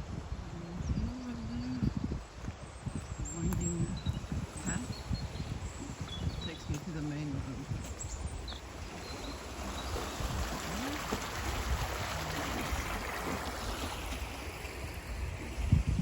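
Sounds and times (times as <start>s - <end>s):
river rushing: 8.6s - 15.6s.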